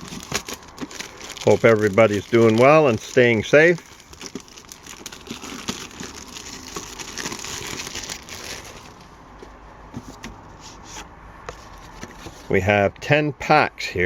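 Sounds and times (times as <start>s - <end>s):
packaging crinkling and rustling: 0.0s - 9.2s.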